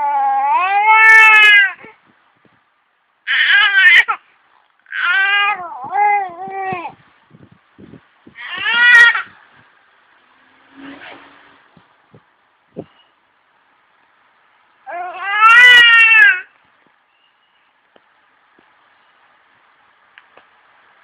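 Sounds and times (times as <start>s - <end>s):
loud wavering cries: 8.4s - 9.4s, 14.9s - 16.5s.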